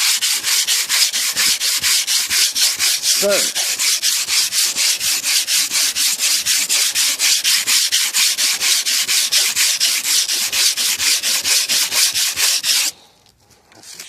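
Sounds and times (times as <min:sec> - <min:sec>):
sandpaper scrubbing painted steel: 0:00.0 - 0:13.0.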